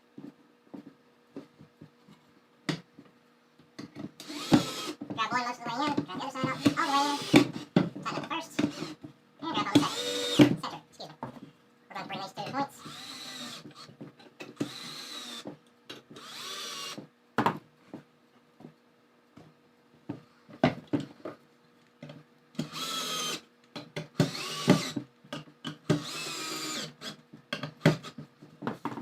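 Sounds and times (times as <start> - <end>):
drill driver motor whine: 4.2 - 5.0, 6.4 - 7.7, 9.7 - 10.5, 12.8 - 13.9, 14.6 - 15.4, 16.2 - 17.0, 22.6 - 23.4, 24.2 - 25.0, 26.0 - 27.2.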